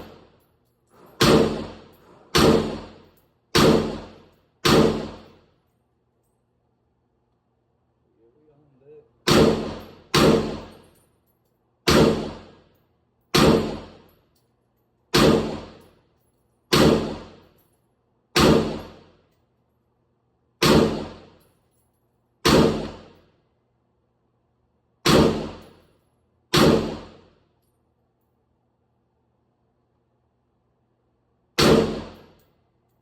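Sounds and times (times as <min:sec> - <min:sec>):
rifle single shots: 0:01.0 - 0:05.4, 0:09.2 - 0:10.8, 0:11.8 - 0:12.7, 0:13.3 - 0:14.1, 0:15.1 - 0:16.0, 0:16.7 - 0:17.5, 0:18.4 - 0:19.1, 0:20.6 - 0:21.4, 0:22.4 - 0:23.2, 0:25.0 - 0:25.8, 0:26.5 - 0:27.4, 0:31.6 - 0:32.4.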